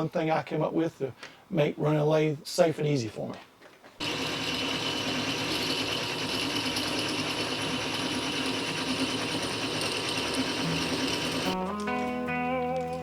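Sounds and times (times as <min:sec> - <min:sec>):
metal lathe whirring: 0:04.0 - 0:11.6.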